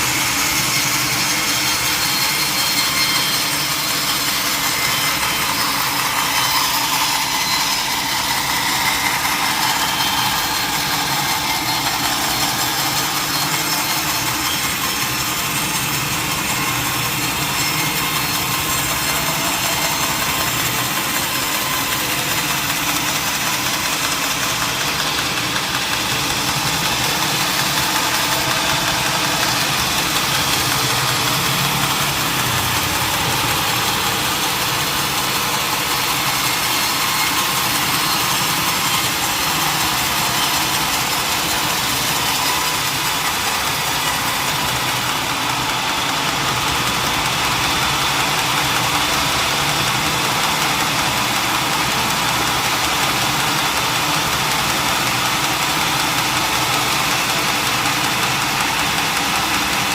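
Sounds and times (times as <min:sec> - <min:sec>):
sawmill saw cutting log: 0:00.0 - 0:59.9.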